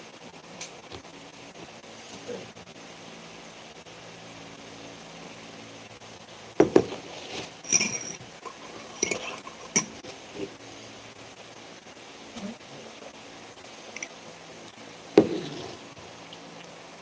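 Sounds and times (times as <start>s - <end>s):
mug knocking on surface: 6.6s - 7.0s
dishware clinking: 7.6s - 10.0s.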